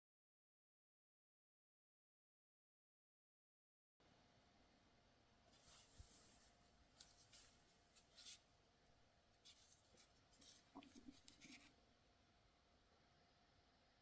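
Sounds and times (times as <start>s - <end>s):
faint scratchy rustling: 5.5s - 8.6s, 9.3s - 11.8s.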